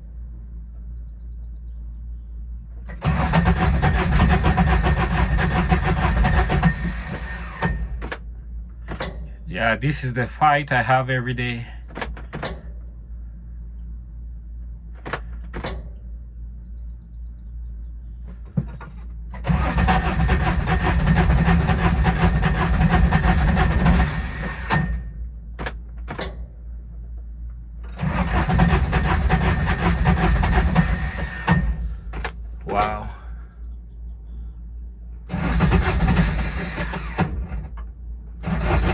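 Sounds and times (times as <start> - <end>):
engine starter cranking: 2.9 - 8.3, 18.6 - 26.3, 27.9 - 33.1, 35.3 - 37.8, 38.4 - 38.9.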